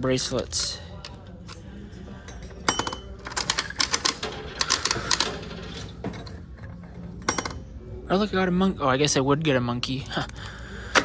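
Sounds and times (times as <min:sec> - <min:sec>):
vending machine clicks: 0:02.6 - 0:06.1, 0:10.1 - 0:11.0.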